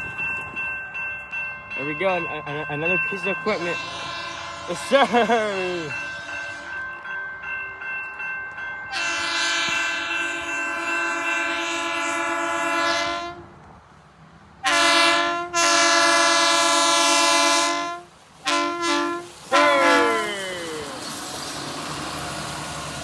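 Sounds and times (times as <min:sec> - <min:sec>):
rail vehicle horn blasts: 0:03.6 - 0:07.0, 0:08.9 - 0:13.5, 0:14.6 - 0:23.0.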